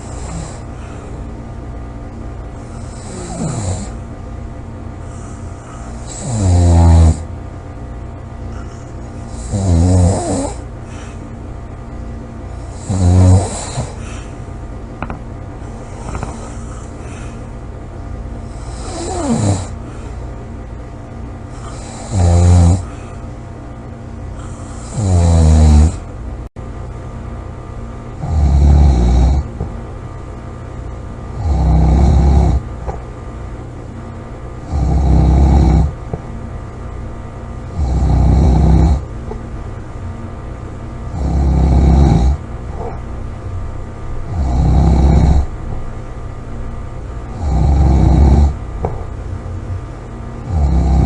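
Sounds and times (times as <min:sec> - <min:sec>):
person snoring loudly: 0:00.0 - 0:00.7, 0:02.6 - 0:04.0, 0:05.1 - 0:07.3, 0:08.6 - 0:11.1, 0:12.6 - 0:14.3, 0:18.4 - 0:19.8, 0:21.5 - 0:23.0, 0:24.4 - 0:26.1, 0:28.2 - 0:29.5, 0:31.4 - 0:32.6, 0:34.7 - 0:36.0, 0:37.7 - 0:39.0, 0:41.1 - 0:42.4, 0:44.3 - 0:45.5, 0:47.3 - 0:48.6, 0:50.4 - 0:51.0.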